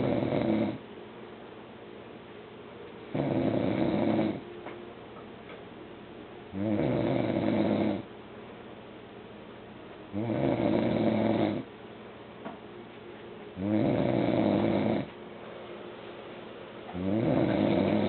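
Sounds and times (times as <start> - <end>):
man snoring: 0.0 - 0.8, 3.1 - 4.4, 6.5 - 8.1, 10.2 - 11.7, 13.6 - 15.1, 17.0 - 18.0.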